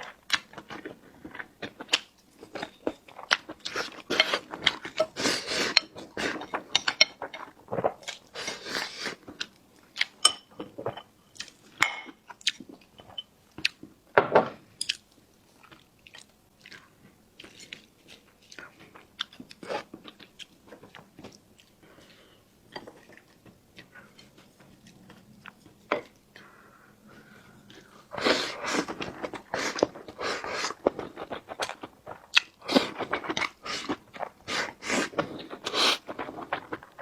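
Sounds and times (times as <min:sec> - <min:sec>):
person chewing and biting food: 0:27.7 - 0:37.0.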